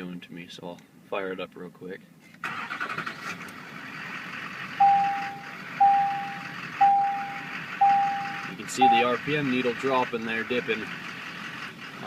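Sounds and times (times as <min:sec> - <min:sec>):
diesel engine rough idle: 0:02.5 - 0:12.0
truck warning chime: 0:04.8 - 0:09.3.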